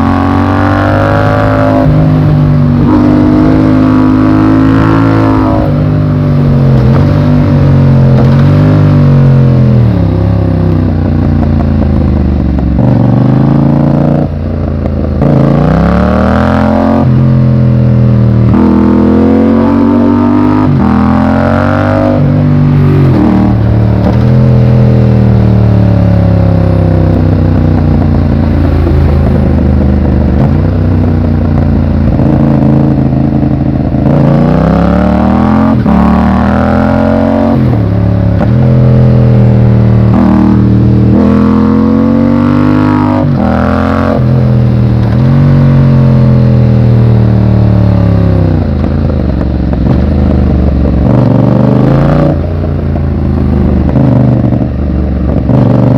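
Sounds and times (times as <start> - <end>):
motorcycle engine accelerating: 0.0 - 55.9.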